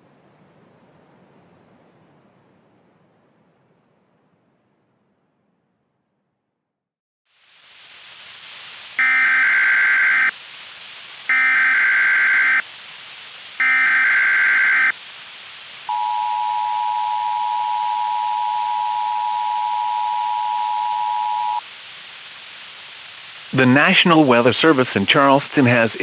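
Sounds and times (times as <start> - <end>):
radio hiss: 7.3 - 26.0
two-tone attention signal: 9.0 - 10.3, 11.3 - 12.6, 13.6 - 14.9, 15.9 - 21.6
warbling digital header bursts: 9.0 - 10.3, 11.3 - 12.6, 13.6 - 15.0.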